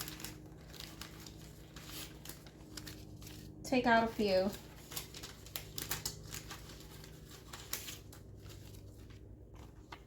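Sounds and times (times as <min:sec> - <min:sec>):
paper rustling and crinkling: 0:00.0 - 0:10.0.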